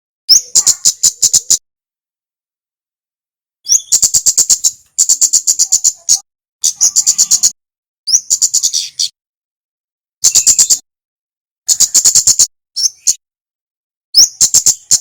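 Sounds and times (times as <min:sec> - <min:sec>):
bird singing high chattering notes: 0:00.3 - 0:01.6, 0:03.7 - 0:09.2, 0:10.2 - 0:10.8, 0:11.7 - 0:13.2, 0:14.2 - 0:15.0.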